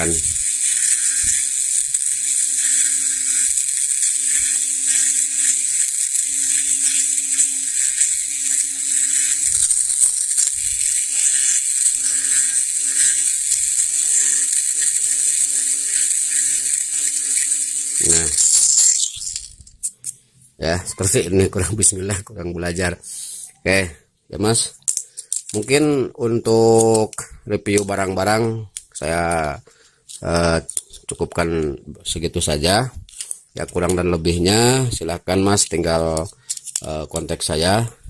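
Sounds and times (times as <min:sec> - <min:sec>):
engraving machine high buzz: 0:00.0 - 0:19.4
lower tool hum: 0:00.0 - 0:19.7.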